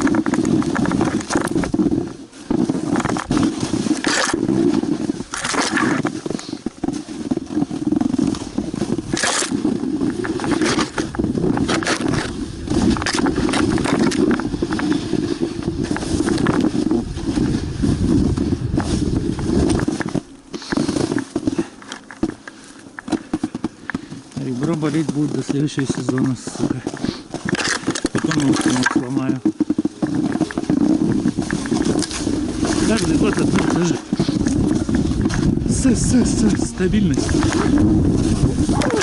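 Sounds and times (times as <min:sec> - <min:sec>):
knocks and scrapes on rough ground: 0:00.0 - 0:39.0.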